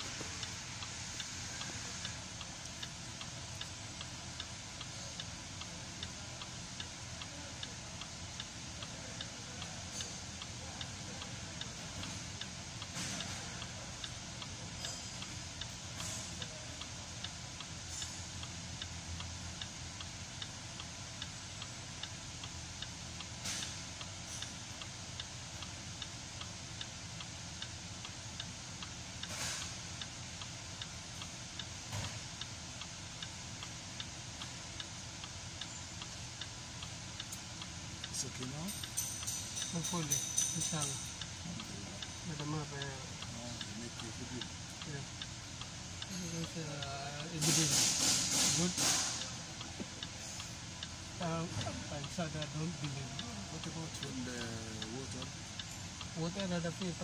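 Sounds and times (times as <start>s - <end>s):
engine idling with fast ticking: 29.9s - 50.0s, 50.6s - 57.0s.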